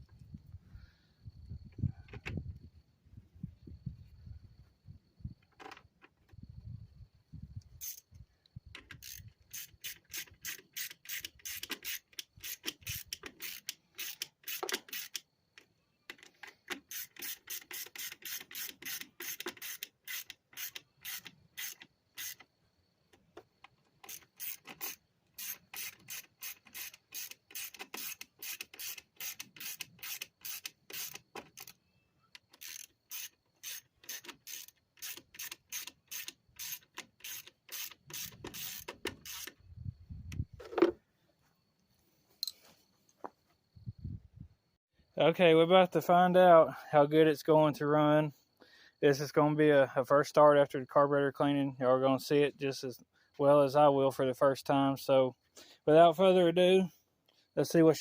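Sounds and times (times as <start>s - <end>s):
ratchet wrench clicking: 7.8s - 8.0s, 8.8s - 15.3s, 16.1s - 22.5s, 24.0s - 31.8s, 32.4s - 39.6s.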